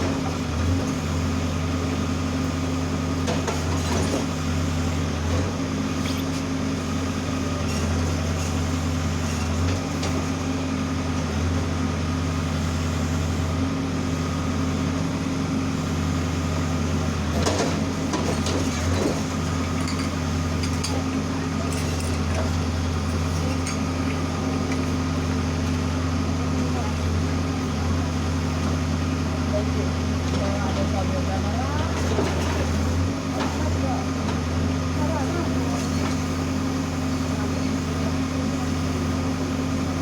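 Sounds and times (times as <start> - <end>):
diesel engine running: 0.0 - 40.0.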